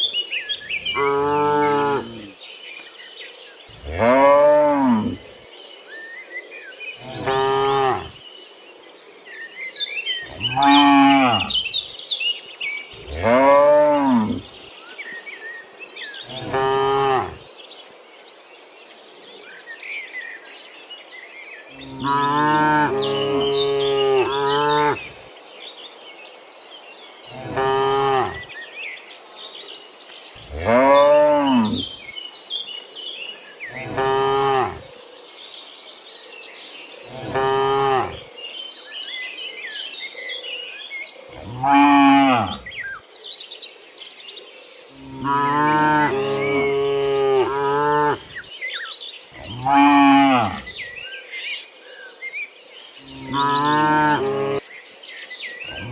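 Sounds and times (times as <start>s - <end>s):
cattle mooing: 45.0s - 48.2s, 49.4s - 50.7s.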